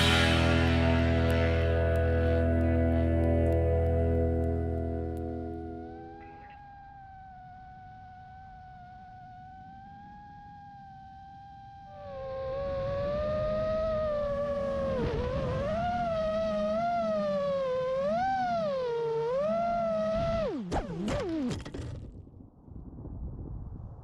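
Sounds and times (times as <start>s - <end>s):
quadcopter motors whining: 11.9s - 22.0s.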